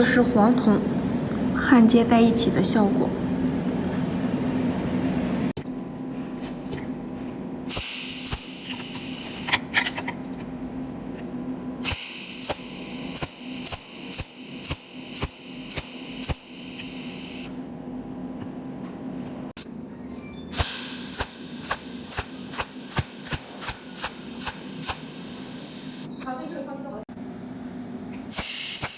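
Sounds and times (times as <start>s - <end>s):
electrical hum: 0.0s - 28.9s
high hiss: 7.7s - 9.6s, 11.8s - 17.5s, 20.5s - 26.1s, 28.3s - 28.9s
welding spot snaps: 7.7s - 9.6s, 20.5s - 26.1s.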